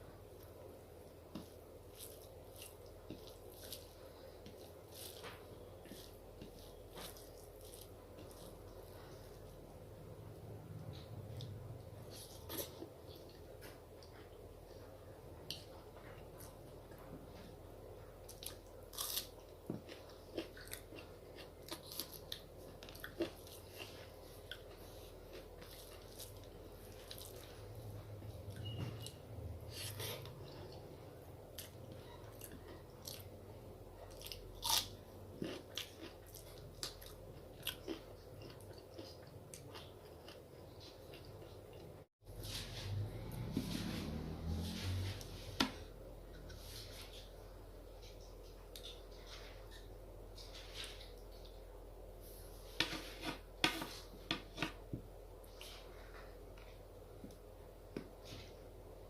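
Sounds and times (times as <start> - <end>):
person chewing soft food: 0.3 - 58.6.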